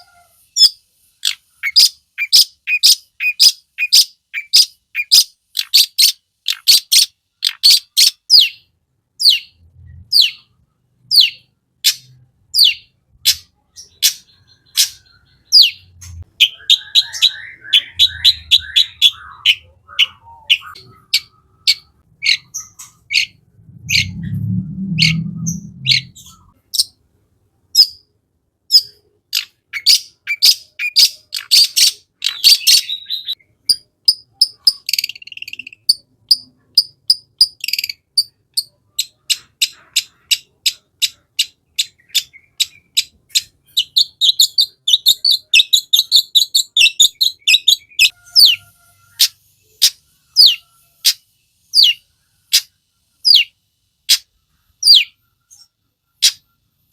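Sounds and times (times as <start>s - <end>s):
bird chirping: 0.0s - 27.0s, 27.7s - 28.1s, 28.7s - 56.9s
low rumble: 21.0s - 26.6s.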